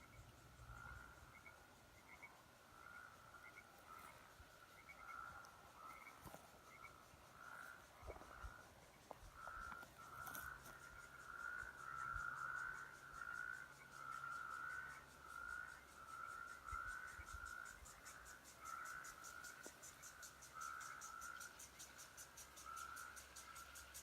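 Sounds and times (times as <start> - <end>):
toads trilling: 0.0 - 23.9.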